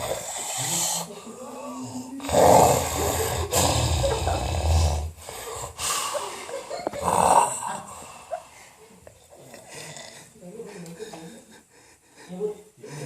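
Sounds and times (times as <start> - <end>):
person snoring loudly: 1.8 - 6.0, 7.0 - 8.1.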